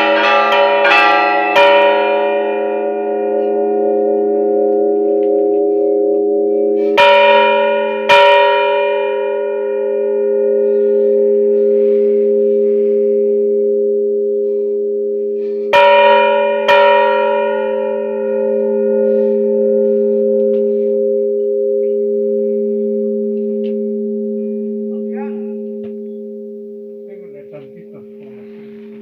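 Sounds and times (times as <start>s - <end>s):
ringing church bell hum: 0.0s - 29.0s
bell strikes: 15.7s - 29.0s.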